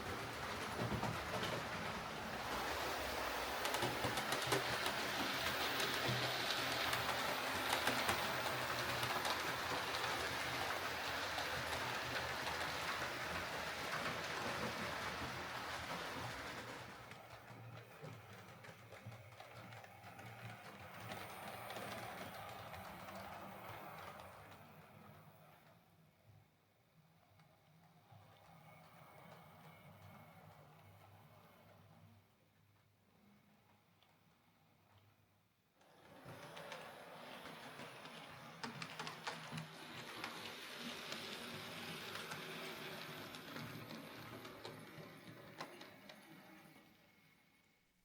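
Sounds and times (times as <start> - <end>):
wheels clicking on rails: 0.0 - 25.9, 35.8 - 47.2
model train motor whirr: 2.4 - 16.9, 35.8 - 47.0.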